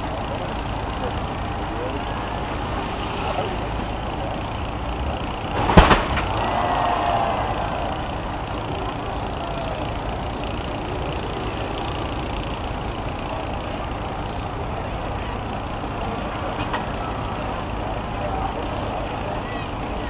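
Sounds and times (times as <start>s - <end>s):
heavy vehicles running: 0.0s - 20.0s
sharp loud bang: 5.6s - 6.4s.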